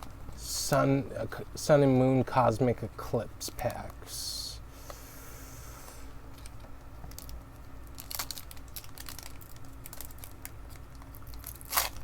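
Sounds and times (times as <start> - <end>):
foil wrapper crinkling: 6.3 - 12.0.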